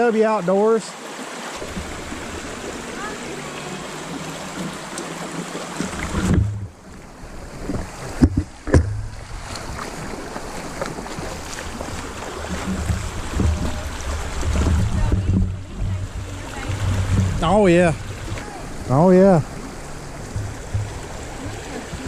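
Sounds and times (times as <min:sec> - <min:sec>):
creek water running: 0:00.0 - 0:22.0
wind rumbling on microphone: 0:01.6 - 0:22.0
sharp knocks: 0:07.7 - 0:09.2, 0:12.5 - 0:18.5, 0:19.9 - 0:22.0.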